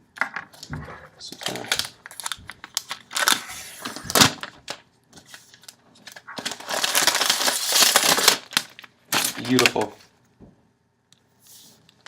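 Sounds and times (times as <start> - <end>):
packaging rustling and crinkling: 0.5 - 10.1.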